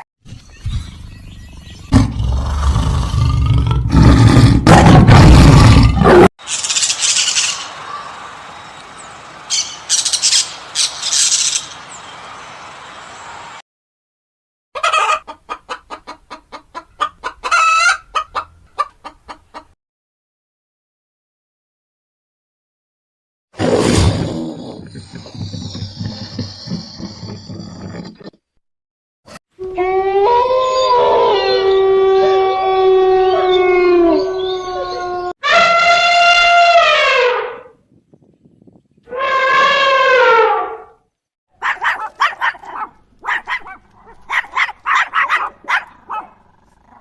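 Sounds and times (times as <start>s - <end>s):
chicken squawk: 14.8s - 19.6s
chicken clucking: 14.8s - 19.7s
animal howling: 29.6s - 35.3s
second animal howling higher: 29.7s - 37.6s.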